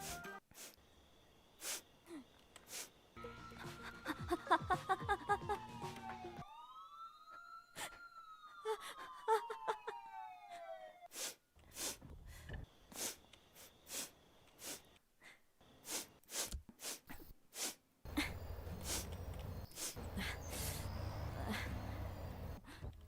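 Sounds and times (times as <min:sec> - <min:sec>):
short sharp breaths: 0:00.0 - 0:00.8, 0:01.6 - 0:03.0, 0:10.5 - 0:23.0.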